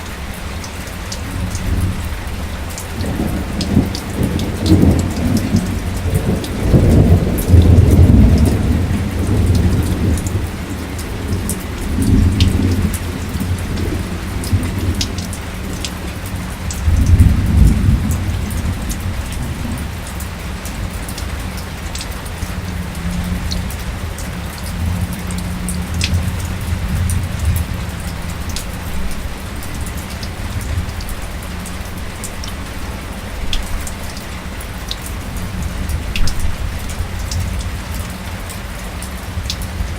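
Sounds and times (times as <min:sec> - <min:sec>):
rain drop ticks: 0:00.0 - 0:39.9
rolling thunder: 0:01.6 - 0:20.0.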